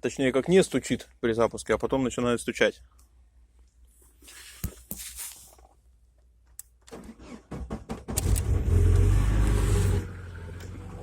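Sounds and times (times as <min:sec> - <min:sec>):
engine cranking and starting: 0:06.9 - 0:11.0.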